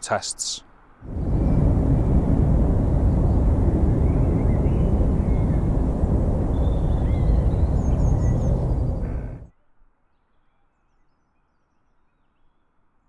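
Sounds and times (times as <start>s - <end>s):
loud low outdoor rumble: 1.0s - 9.5s
faint bird chirps: 10.1s - 12.8s.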